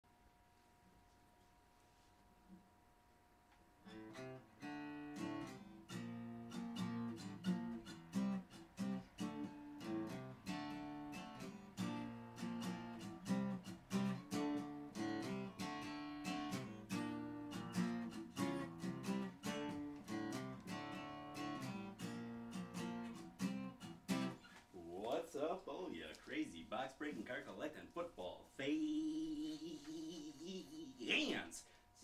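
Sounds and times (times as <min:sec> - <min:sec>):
strummed acoustic guitar: 0:03.8 - 0:25.2, 0:28.8 - 0:31.5.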